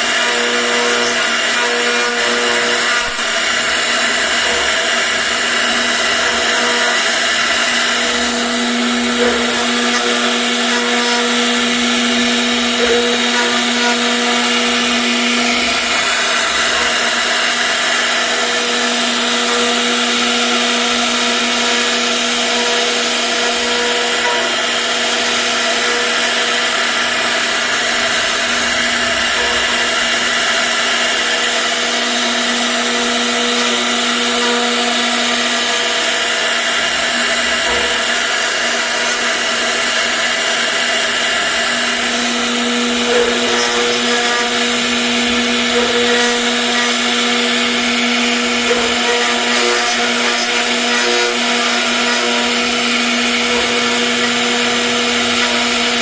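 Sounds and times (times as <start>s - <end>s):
bit cutting wood: 0.0s - 56.0s
router spindle whining: 0.0s - 56.0s.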